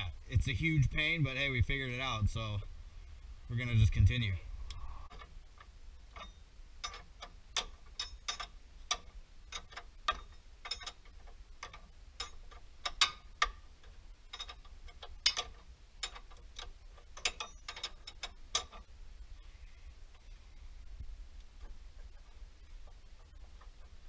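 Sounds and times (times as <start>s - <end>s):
hand tools clicking and clinking: 6.1s - 18.9s.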